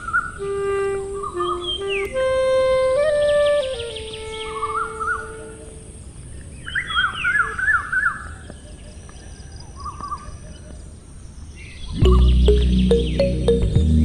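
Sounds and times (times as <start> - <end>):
low steady background hiss: 0.0 - 8.0.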